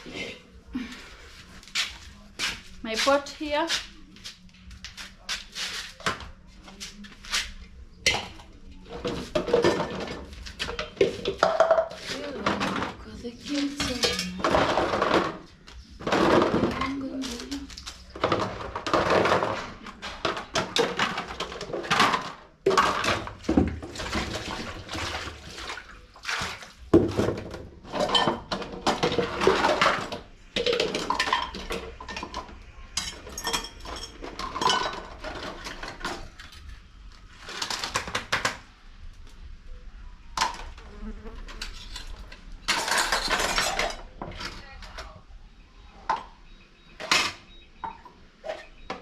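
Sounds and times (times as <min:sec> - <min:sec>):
pots and utensils clattering: 0:08.0 - 0:38.5, 0:41.5 - 0:45.2, 0:47.0 - 0:49.0.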